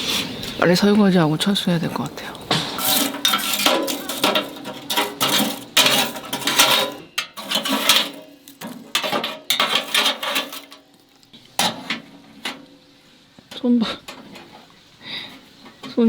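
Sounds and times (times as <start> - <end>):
camping pots and pans clattering: 0.0 - 16.0
metallic ringing: 2.5 - 10.8.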